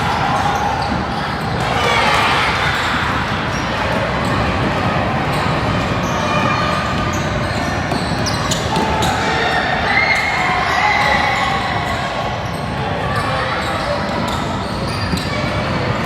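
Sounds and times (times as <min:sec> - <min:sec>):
spectators and players voices: 0:00.0 - 0:16.0.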